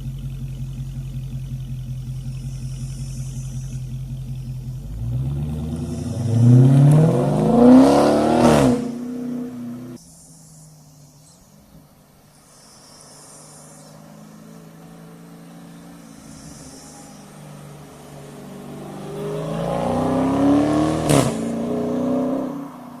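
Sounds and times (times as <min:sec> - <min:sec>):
car engine accelerating past: 0:04.6 - 0:10.0, 0:13.5 - 0:23.0.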